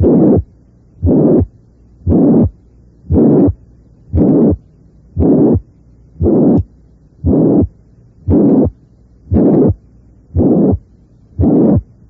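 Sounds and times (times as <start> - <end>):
heartbeat: 0.0 - 3.6, 4.2 - 4.6, 5.2 - 5.6, 6.2 - 7.7, 9.3 - 9.8, 11.4 - 11.8
harsh heart murmur: 0.0 - 4.6, 5.2 - 9.8, 10.4 - 10.8, 11.4 - 11.9.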